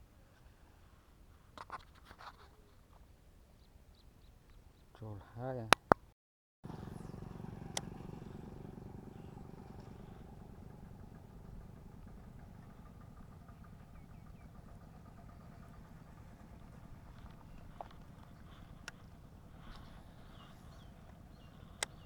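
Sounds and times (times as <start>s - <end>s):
small engine rumbling: 6.6s - 22.0s.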